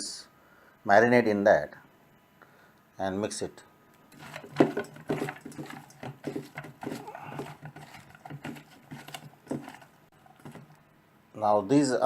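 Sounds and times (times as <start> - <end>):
wet squishes and knocks in bowl: 4.1 - 10.8.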